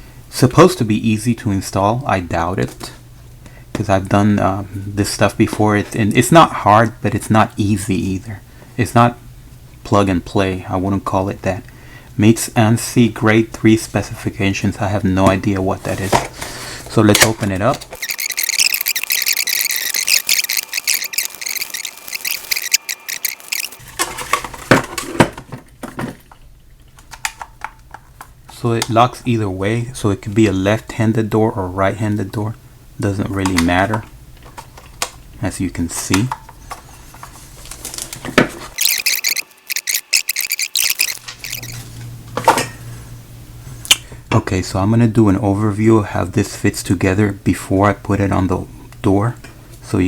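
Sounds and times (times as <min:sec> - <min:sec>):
plastic and cardboard crinkling: 0:19.9 - 0:26.4, 0:36.0 - 0:39.4.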